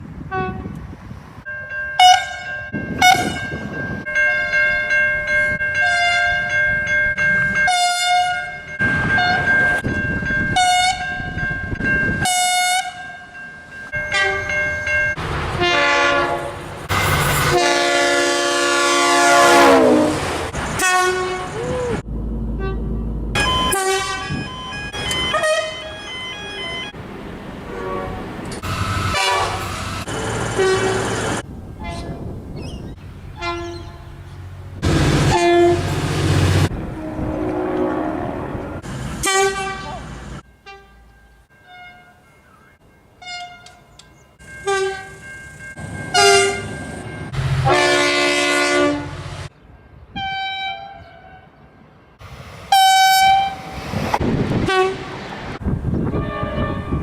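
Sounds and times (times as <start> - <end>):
train rumble: 0.0 - 50.4, 51.8 - 57.0
train horns: 0.2 - 0.8, 2.0 - 3.6, 5.8 - 6.5, 7.6 - 9.4, 10.5 - 11.1, 12.2 - 13.2, 14.0 - 14.6, 15.5 - 16.6, 17.4 - 21.7, 22.6 - 26.9, 27.6 - 32.1, 33.4 - 42.3, 43.2 - 44.0, 44.6 - 45.2, 46.1 - 49.5, 50.1 - 51.6, 52.7 - 53.8, 54.6 - 55.2, 56.0 - 57.0.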